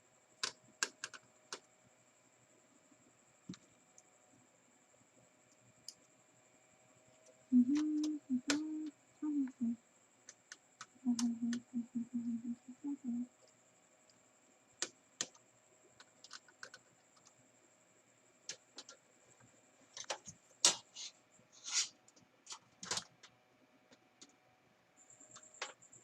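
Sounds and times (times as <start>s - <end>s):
small parts clicking and tapping: 0.4s - 1.7s, 7.1s - 8.9s, 14.8s - 17.4s, 18.4s - 21.0s, 21.6s - 24.4s, 25.2s - 26.0s.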